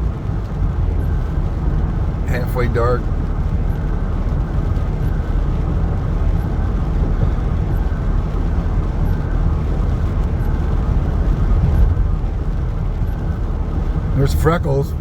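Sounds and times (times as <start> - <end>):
car driving in rain: 0.0 - 15.0.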